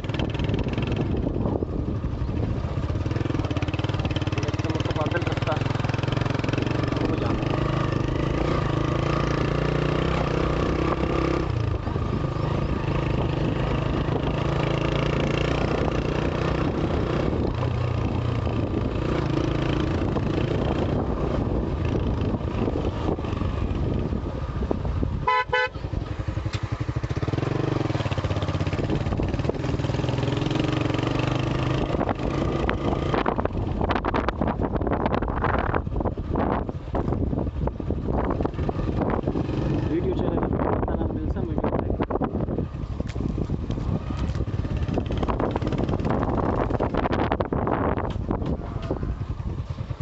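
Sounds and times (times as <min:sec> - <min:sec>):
motorcycle engine running: 0:00.0 - 0:50.0
wind buffeting microphone: 0:00.0 - 0:50.0
motorcycle horn: 0:25.2 - 0:25.9.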